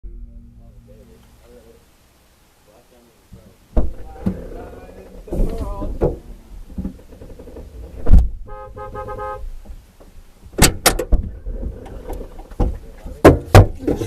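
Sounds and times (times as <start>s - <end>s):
low vehicle rumble: 0.0s - 14.0s
loud thumps: 3.3s - 14.0s
car horn beeps: 8.4s - 9.6s.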